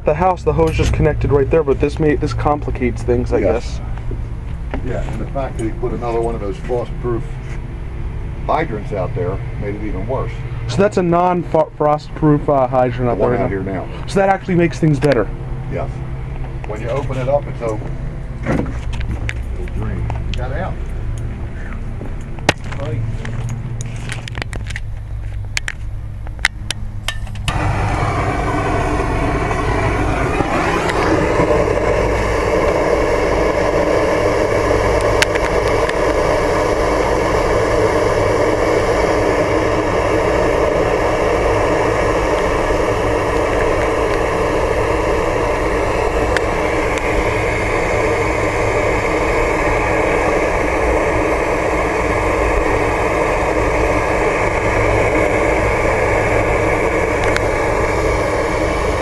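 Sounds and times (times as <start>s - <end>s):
motor-driven machine humming: 26.8s - 59.0s.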